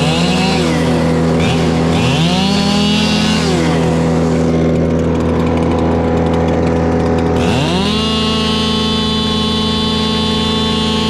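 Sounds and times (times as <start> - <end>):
chainsaw revving: 0.0 - 11.0
engine running steadily: 0.0 - 11.0.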